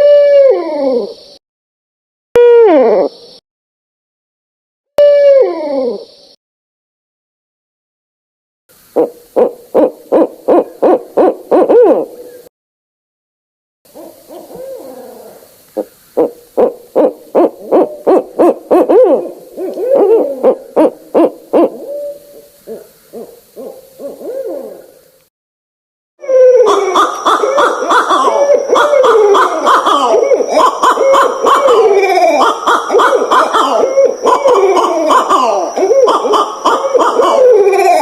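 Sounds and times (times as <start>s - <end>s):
owls hooting: 0.0s - 1.2s, 2.4s - 3.4s, 9.0s - 12.5s, 13.9s - 25.0s, 26.2s - 38.0s.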